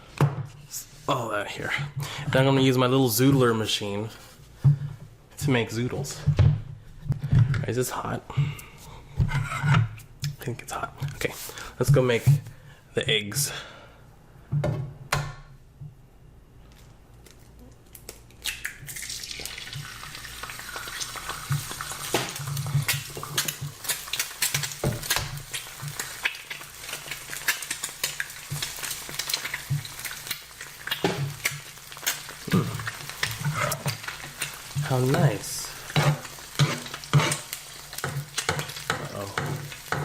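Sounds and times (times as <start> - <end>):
eggs sizzling in a skillet: 18.4 - 40.0.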